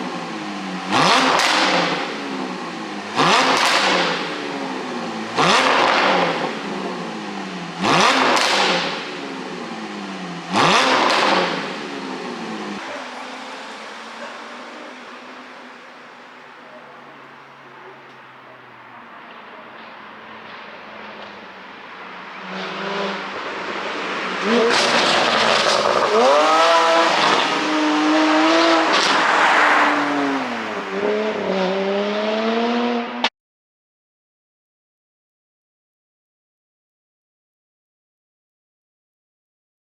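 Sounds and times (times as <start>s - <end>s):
sports car engine revving: 0.3s - 33.3s
exhaust crackling: 12.7s - 32.2s.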